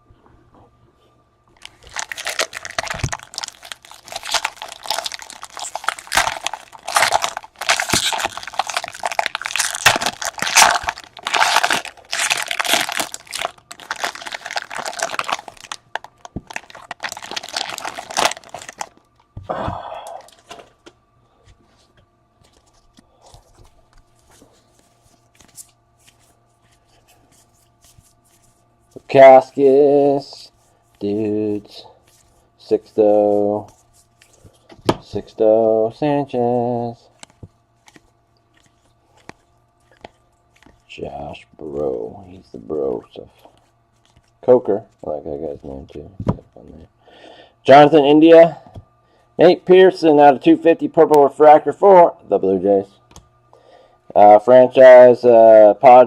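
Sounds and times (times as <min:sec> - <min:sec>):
plastic wrapper crinkling and tearing: 0:01.6 - 0:19.1.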